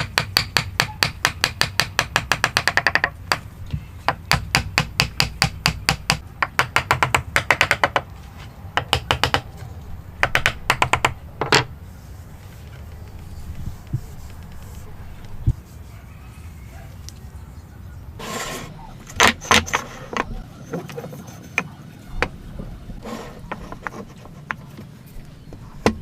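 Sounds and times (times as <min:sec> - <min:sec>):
hammer tapping chisel into wood: 0:00.0 - 0:03.4, 0:04.1 - 0:08.1, 0:08.8 - 0:09.5.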